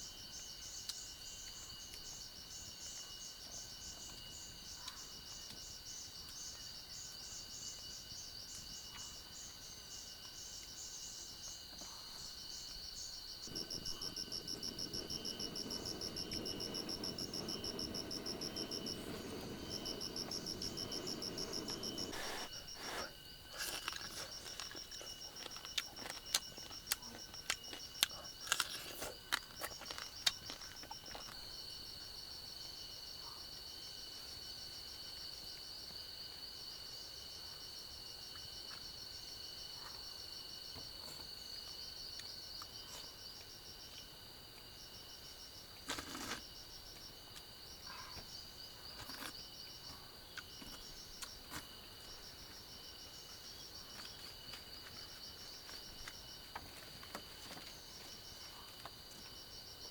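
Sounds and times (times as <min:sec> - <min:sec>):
insects chirring: 0:00.0 - 0:59.9.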